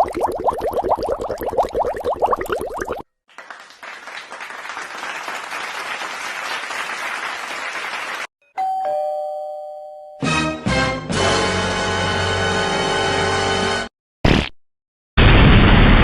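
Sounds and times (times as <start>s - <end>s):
applause: 3.3s - 8.3s.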